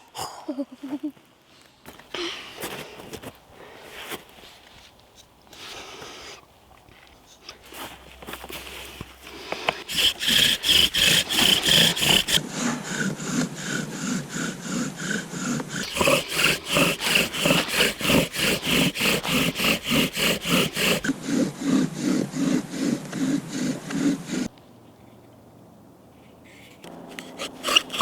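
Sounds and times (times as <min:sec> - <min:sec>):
bow drill squeaking: 0:09.9 - 0:12.4, 0:15.6 - 0:21.1, 0:26.6 - 0:28.0.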